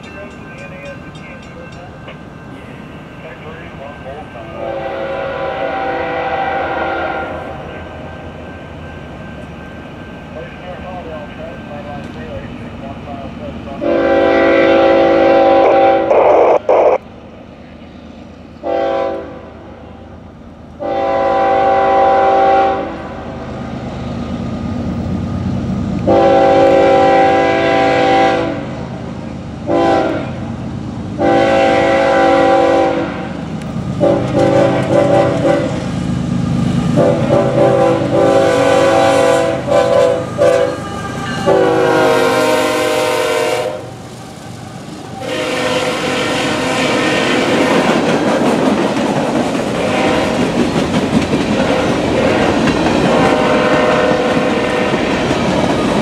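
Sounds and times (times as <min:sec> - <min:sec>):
passing train rumble: 0:00.0 - 0:56.0
locomotive air horn blasts: 0:04.6 - 0:07.6, 0:13.8 - 0:16.6, 0:18.6 - 0:19.5, 0:20.8 - 0:23.1, 0:26.1 - 0:28.7, 0:29.7 - 0:30.4, 0:31.2 - 0:33.3, 0:34.0 - 0:35.8, 0:37.0 - 0:43.9, 0:45.2 - 0:47.6, 0:49.8 - 0:50.4, 0:53.3 - 0:54.4.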